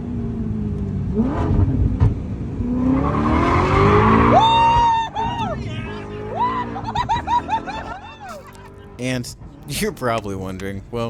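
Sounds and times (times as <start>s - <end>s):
car engine revving hard: 0.4s - 10.3s
tyres skidding and squealing: 2.6s - 11.0s.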